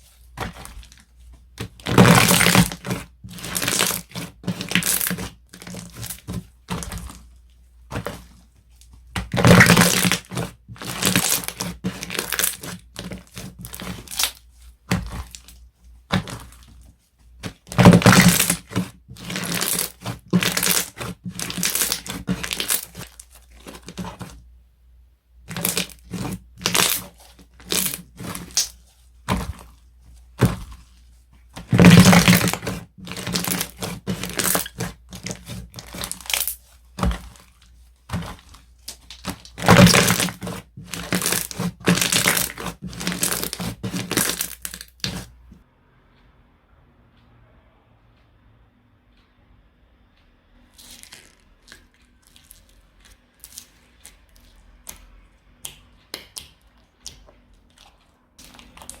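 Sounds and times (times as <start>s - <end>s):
slime crackling and popping: 1.6s - 7.2s, 9.2s - 15.5s, 17.4s - 24.3s, 25.5s - 30.9s, 31.6s - 45.3s, 50.7s - 59.0s.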